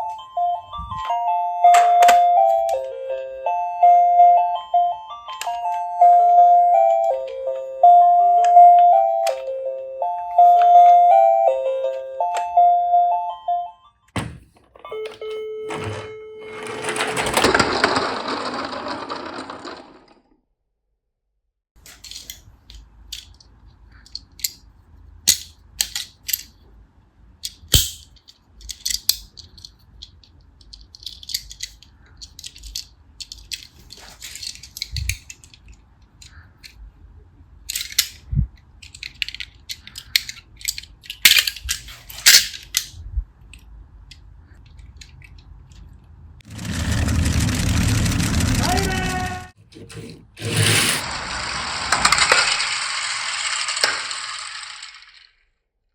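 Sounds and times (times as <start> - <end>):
music jingle: 0.0 - 14.1, 14.8 - 17.2
toy cars clattering: 14.7 - 20.3, 21.8 - 26.7, 27.4 - 36.8, 37.6 - 55.6
low rumble: 46.4 - 49.6
rush of noise: 46.5 - 49.5.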